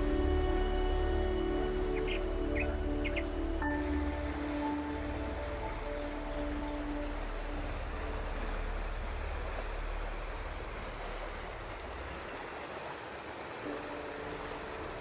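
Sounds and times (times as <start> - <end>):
soft background music: 0.0 - 12.7, 13.4 - 15.0
flowing water rushing: 0.0 - 15.0.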